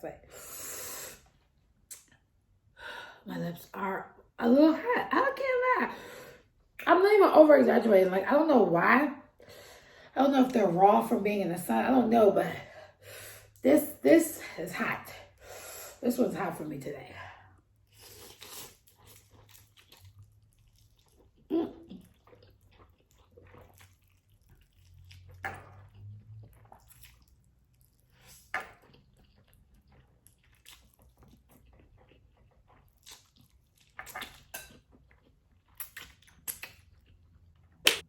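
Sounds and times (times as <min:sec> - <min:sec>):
wet chewing and slurping: 0:17.8 - 0:38.0.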